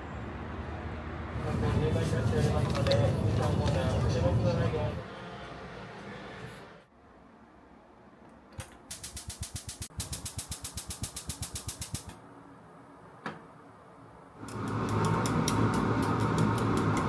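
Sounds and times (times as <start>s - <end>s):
rapid mechanical clicks: 8.6s - 12.2s
loud whirring with low hum: 14.3s - 17.0s.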